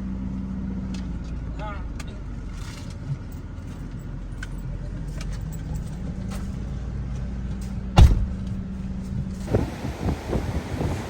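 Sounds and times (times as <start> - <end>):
car engine rumble: 0.0 - 11.0
loud thump: 8.0 - 8.5.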